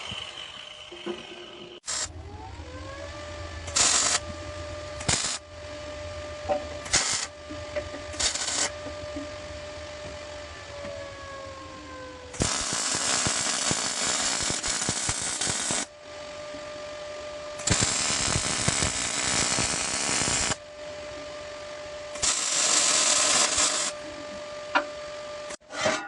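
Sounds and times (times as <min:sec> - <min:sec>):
steady hum: 0:00.0 - 0:26.0
welding arc crackling: 0:01.8 - 0:02.2, 0:03.7 - 0:04.3, 0:05.0 - 0:05.4, 0:06.8 - 0:07.3, 0:08.1 - 0:08.8, 0:12.4 - 0:15.9, 0:17.6 - 0:20.6, 0:22.2 - 0:24.0.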